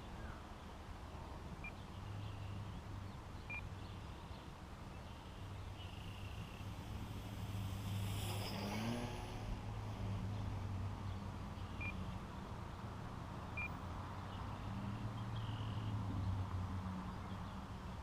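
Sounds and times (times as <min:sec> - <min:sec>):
model plane propeller buzzing: 0:06.6 - 0:09.6.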